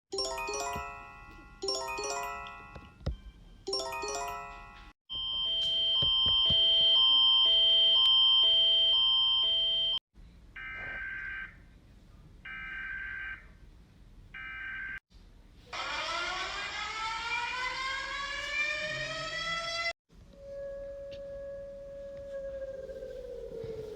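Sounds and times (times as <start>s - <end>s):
steady high alarm tone: 4.4s - 10.0s, 17.0s - 22.4s
rising siren-like tone: 15.8s - 23.9s
alternating two-note alarm: 20.4s - 22.4s.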